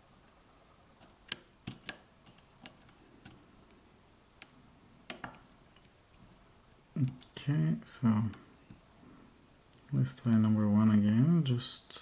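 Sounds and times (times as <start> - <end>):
lock pick clicking in padlock: 1.2 - 3.4.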